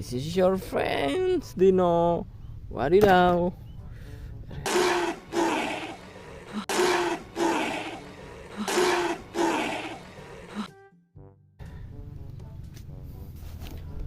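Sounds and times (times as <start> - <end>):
dinosaur roars: 4.7 - 10.7.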